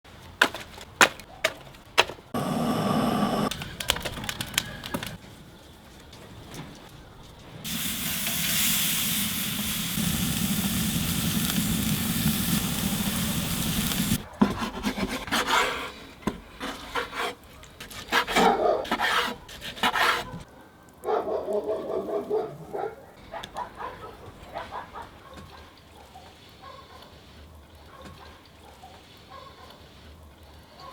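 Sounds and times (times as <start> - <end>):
food sizzling over fire: 2.4 - 5.2, 7.6 - 14.3.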